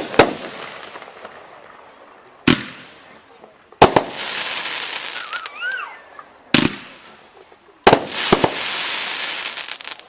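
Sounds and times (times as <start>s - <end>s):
firework shot bursts: 0.0s - 1.4s, 2.4s - 3.1s, 3.8s - 5.6s, 6.5s - 7.2s, 7.8s - 10.0s
firework crackling: 0.0s - 10.0s.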